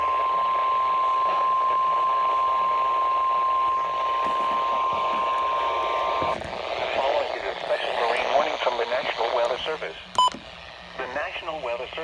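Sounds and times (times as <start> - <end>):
steady warning alarm tone: 0.0 - 7.1
radio hiss: 1.1 - 12.0.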